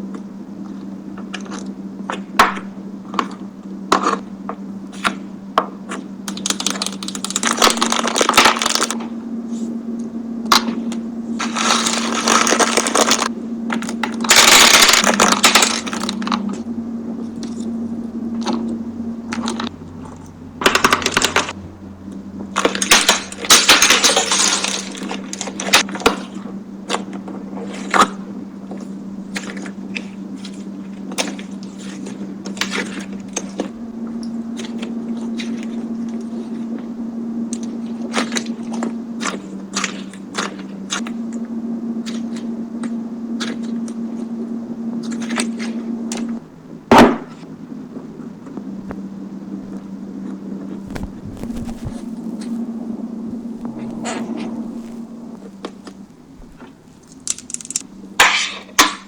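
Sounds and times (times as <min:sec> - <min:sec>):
low hum: 0:00.0 - 0:59.0
rustling: 0:50.6 - 0:57.9
small hard objects clicking: 0:57.1 - 0:57.9.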